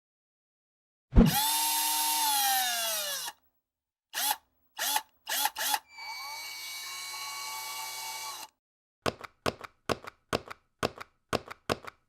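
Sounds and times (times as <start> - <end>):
power drill spinning: 1.3 - 3.4, 4.2 - 8.5.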